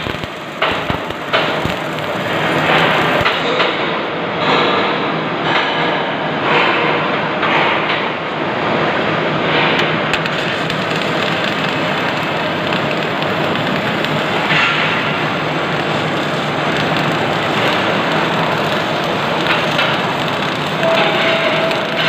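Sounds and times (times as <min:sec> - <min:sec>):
welding arc crackling: 0:00.0 - 0:03.8, 0:09.8 - 0:22.0.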